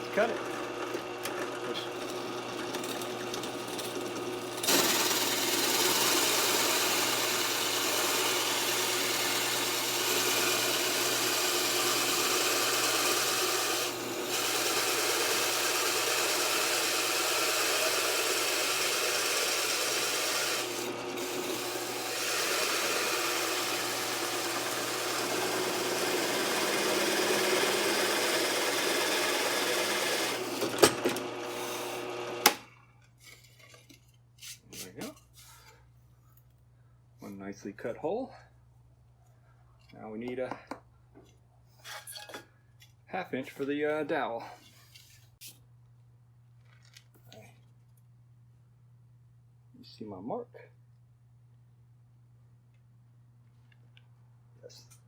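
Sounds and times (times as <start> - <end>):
circle cutter cutting wood: 0.0 - 32.7
drill press motor hum: 0.0 - 32.7.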